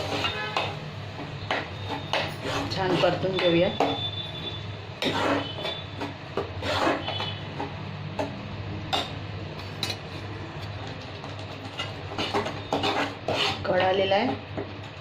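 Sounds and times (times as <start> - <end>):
spatula scraping and stirring in pan: 0.0 - 8.0, 8.9 - 15.0.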